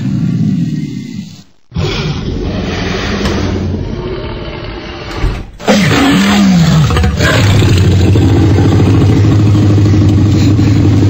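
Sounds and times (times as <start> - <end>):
engine-like drone: 6.2 - 11.0.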